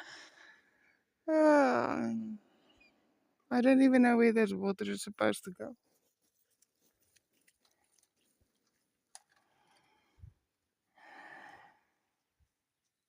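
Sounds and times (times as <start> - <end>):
brief rustle: 5.9 - 9.9.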